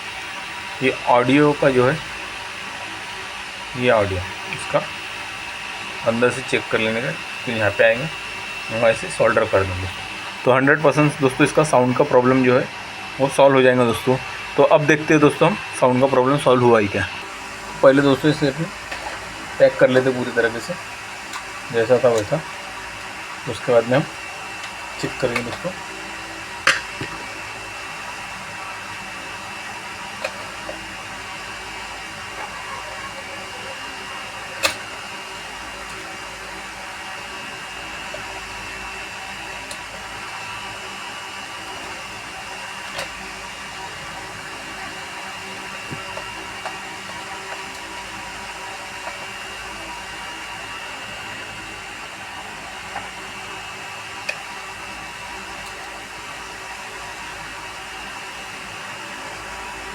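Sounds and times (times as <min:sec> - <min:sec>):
blowing whirring noise with whine: 0:00.0 - 0:59.9.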